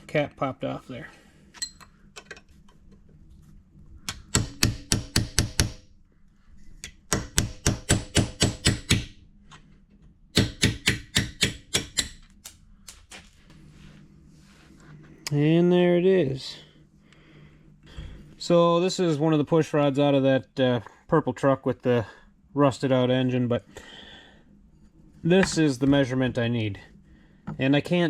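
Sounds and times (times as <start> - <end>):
metal-on-metal tapping: 4.1 - 5.8.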